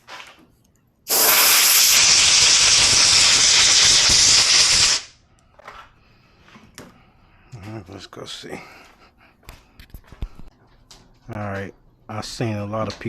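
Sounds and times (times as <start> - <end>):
compressed air hiss: 1.1 - 5.2.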